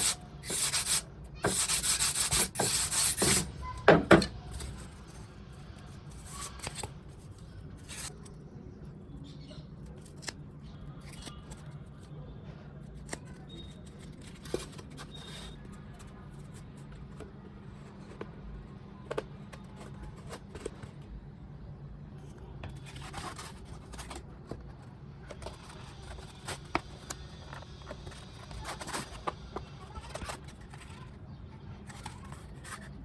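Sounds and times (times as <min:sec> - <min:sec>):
scratchy rubbing: 0:00.0 - 0:03.6.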